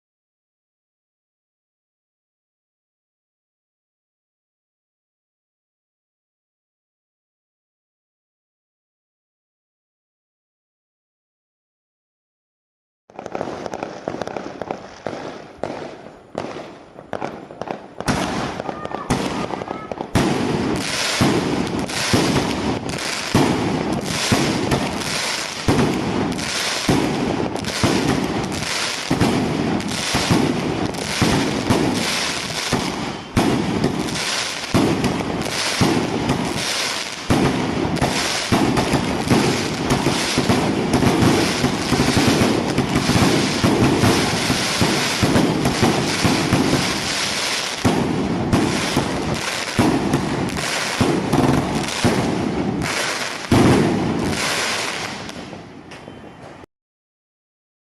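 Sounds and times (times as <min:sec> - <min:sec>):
firework cake firing: 0:13.1 - 0:55.6
firework crackling: 0:13.1 - 0:55.7.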